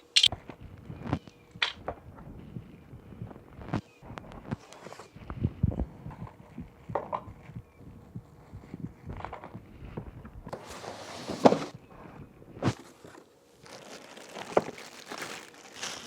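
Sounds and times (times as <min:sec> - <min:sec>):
cardboard packaging rustling: 0:12.8 - 0:16.0.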